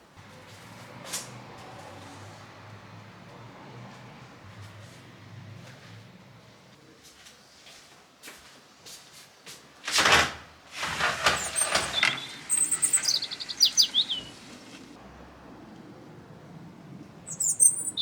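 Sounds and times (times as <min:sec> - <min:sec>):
loud rushes of noise: 0:10.8 - 0:17.1
small birds chirping: 0:11.2 - 0:15.0, 0:15.6 - 0:18.0.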